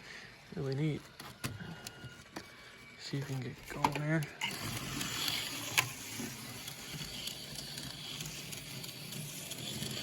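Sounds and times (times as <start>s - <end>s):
slot car motor whirring: 4.4s - 10.0s.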